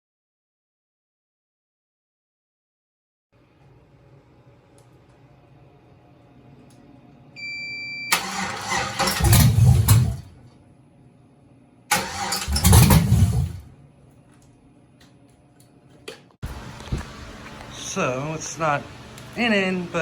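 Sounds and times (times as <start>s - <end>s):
engine starter cranking: 8.1s - 10.3s, 11.9s - 13.7s.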